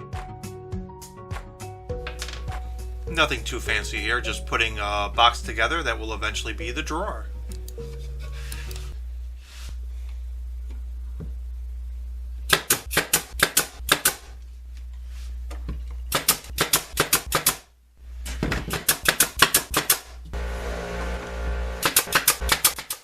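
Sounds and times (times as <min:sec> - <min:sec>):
steady low hum: 0:02.6 - 0:12.6, 0:20.2 - 0:22.6
rapid sharp strikes on wood: 0:12.5 - 0:14.3, 0:16.1 - 0:17.7, 0:18.3 - 0:20.2, 0:21.8 - 0:23.0.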